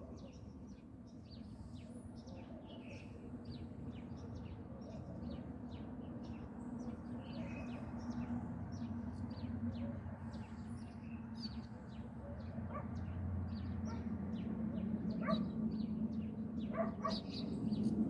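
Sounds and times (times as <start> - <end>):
small birds chirping: 16.6 - 18.0.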